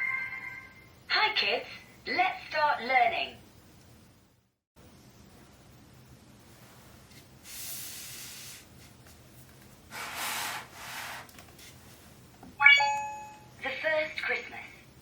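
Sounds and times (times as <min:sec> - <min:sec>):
bright electronic chime: 0:12.6 - 0:13.6.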